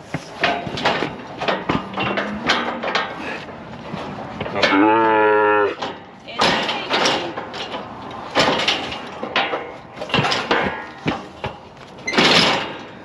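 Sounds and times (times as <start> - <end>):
steel chute clanking and banging: 0.0 - 13.0.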